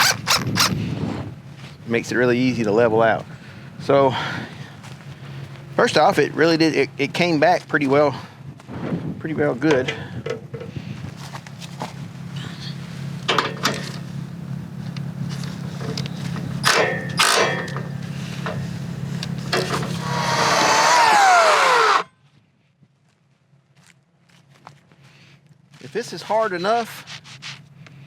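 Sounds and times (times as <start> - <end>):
sawmill engine humming: 11.4 - 22.1.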